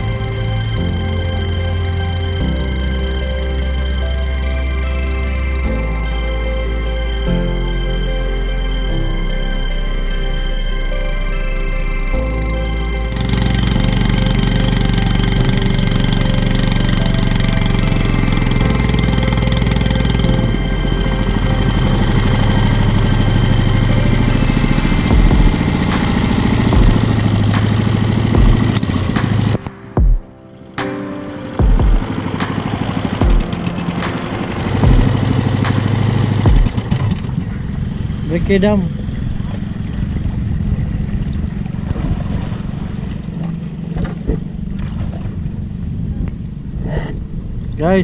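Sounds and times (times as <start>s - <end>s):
small engine running: 11.7s - 29.6s, 30.7s - 41.7s
low thumps: 21.9s - 30.4s, 31.6s - 37.2s.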